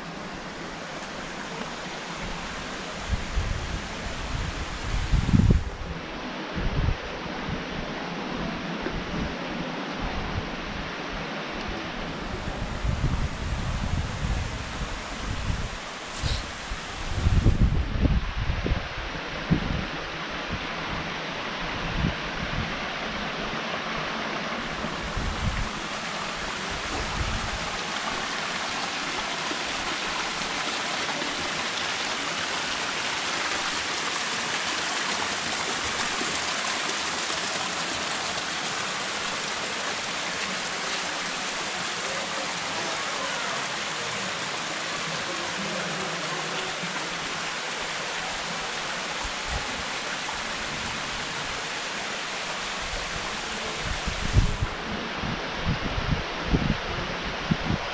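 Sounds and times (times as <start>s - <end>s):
waterfall splashing: 23.0s - 55.4s.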